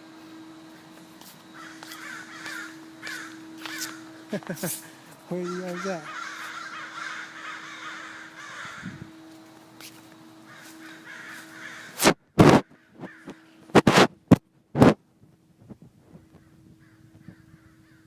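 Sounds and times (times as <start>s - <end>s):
crows cawing: 1.5s - 4.3s, 5.3s - 9.2s, 10.4s - 13.6s, 16.4s - 18.0s.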